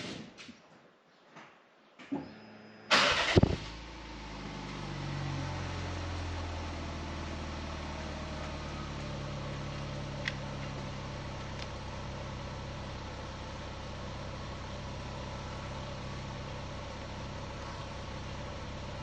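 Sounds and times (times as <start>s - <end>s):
engine starting and idling: 2.9s - 12.8s.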